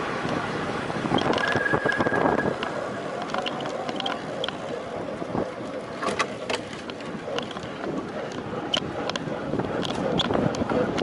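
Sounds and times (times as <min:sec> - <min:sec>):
wind rushing over microphone: 0:00.0 - 0:06.0
thin high tone: 0:01.3 - 0:03.1.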